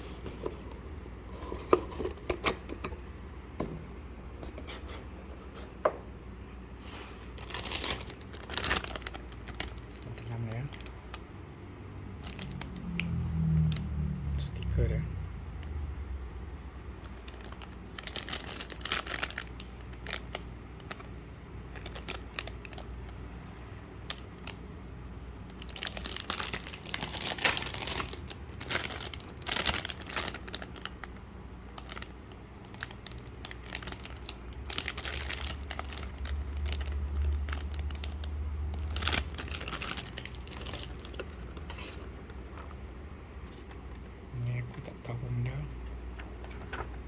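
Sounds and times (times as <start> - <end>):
plastic packaging crinkling: 6.9 - 11.3, 12.2 - 13.8, 17.0 - 23.2, 25.4 - 44.0, 46.2 - 47.0.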